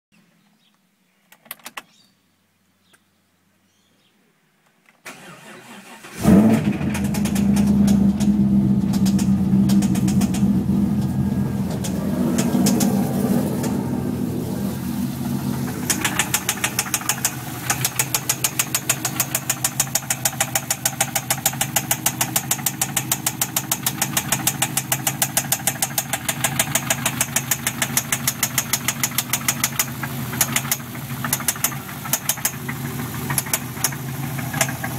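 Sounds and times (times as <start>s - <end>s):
engine cranking and starting: 5.1s - 34.9s
engine idling: 5.4s - 34.9s
rapid even knocking: 15.8s - 32.7s.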